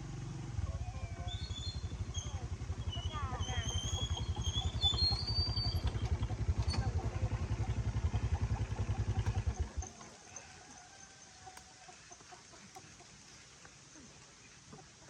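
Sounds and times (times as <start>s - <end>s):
motorcycle engine idling: 0.0s - 10.8s
chickens clucking faintly: 0.6s - 15.0s.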